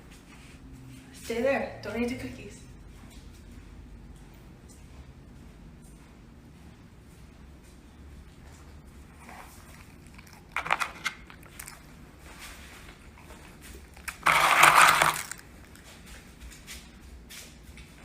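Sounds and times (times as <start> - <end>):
dog crunching cookies: 9.0 - 16.7
wrapper crinkling: 9.2 - 16.3.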